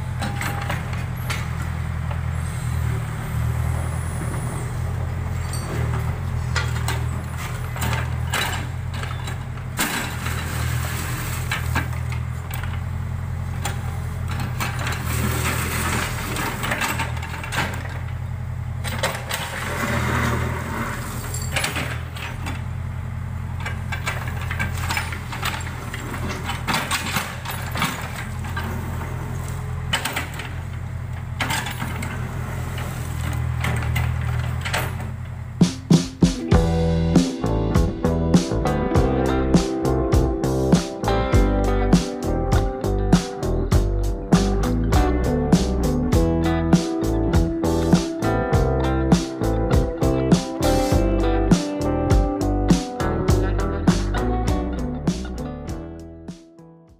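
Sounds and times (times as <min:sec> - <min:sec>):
backhoe diesel engine running: 0:00.0 - 0:56.4
bucket clanking and scraping soil: 0:05.3 - 0:12.8, 0:13.6 - 0:18.1, 0:18.8 - 0:22.6.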